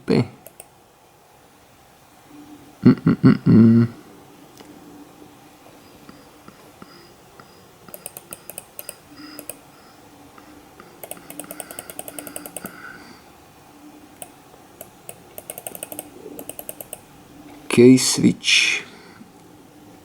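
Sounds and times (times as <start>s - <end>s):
typing on computer keyboard: 0.4s - 0.7s, 7.9s - 9.6s, 10.9s - 12.8s, 14.2s - 17.0s.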